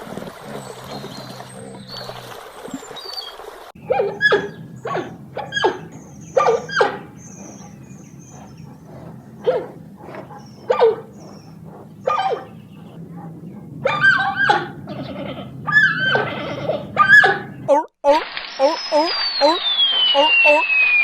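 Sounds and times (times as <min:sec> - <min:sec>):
wild animal short sharp calls: 0:03.8 - 0:13.0
faint high chirps: 0:18.6 - 0:21.0.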